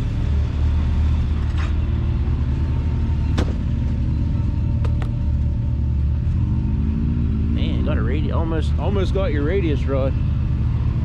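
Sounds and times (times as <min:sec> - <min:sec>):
engine idling: 0:00.0 - 0:06.7.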